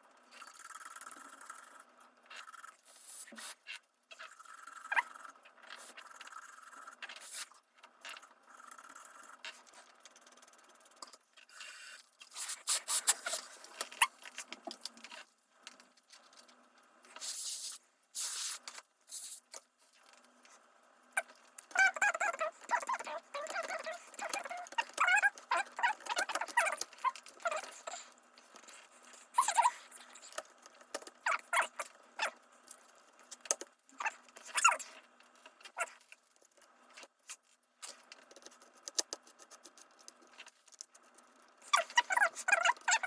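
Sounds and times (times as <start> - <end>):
squeaky chirps: 21.2 - 28.1, 29.4 - 30.3, 41.7 - 43.0.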